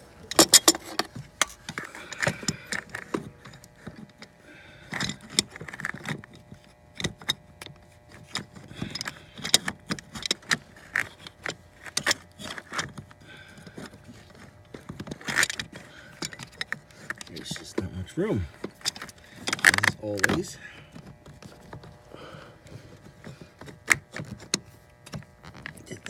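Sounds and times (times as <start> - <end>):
metal hand tools clicking and scraping: 0.2 - 6.4, 8.1 - 20.7.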